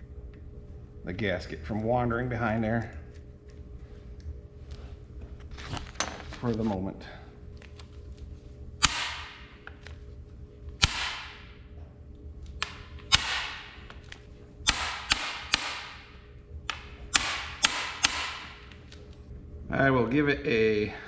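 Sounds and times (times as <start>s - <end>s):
hammer striking steel: 8.8s - 9.5s, 10.8s - 11.6s, 13.1s - 13.8s, 14.6s - 16.1s, 16.7s - 18.6s.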